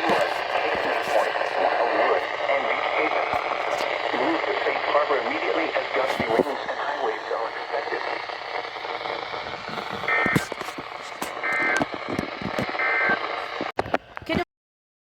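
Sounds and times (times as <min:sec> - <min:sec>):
buzzy data bursts: 0:00.0 - 0:13.6
radio static: 0:00.0 - 0:14.5
sharp clicks: 0:08.0 - 0:14.4.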